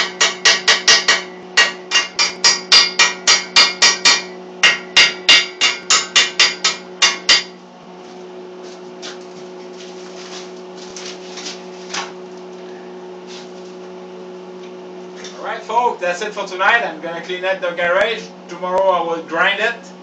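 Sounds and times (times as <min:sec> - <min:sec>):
hammer striking steel: 0:00.0 - 0:07.6
steady low hum: 0:00.0 - 0:20.0.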